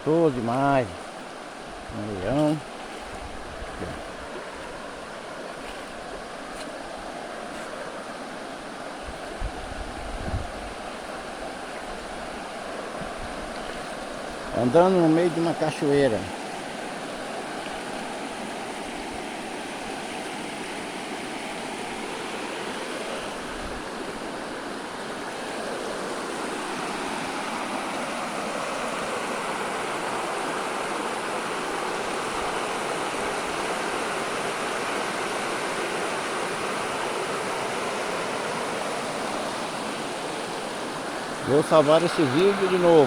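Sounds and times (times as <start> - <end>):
waterfall rushing over rocks: 25.6 - 43.0.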